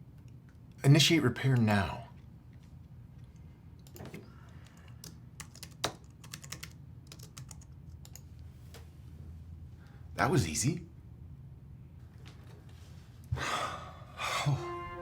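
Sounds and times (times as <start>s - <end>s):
computer keyboard typing: 3.8s - 8.3s.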